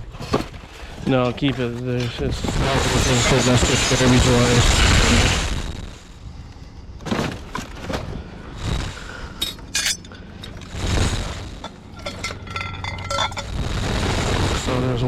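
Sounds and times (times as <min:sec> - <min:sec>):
junk items clinking and clattering: 0:00.0 - 0:03.5, 0:07.0 - 0:08.5, 0:09.3 - 0:10.8, 0:11.5 - 0:13.7.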